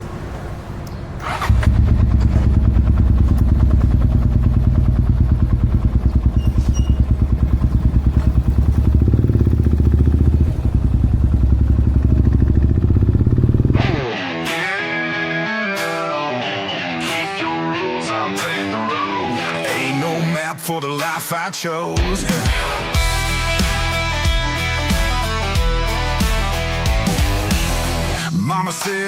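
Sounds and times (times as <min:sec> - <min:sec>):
motorcycle engine running: 0:01.2 - 0:14.1
guitar music: 0:13.7 - 0:20.5, 0:22.0 - 0:28.3.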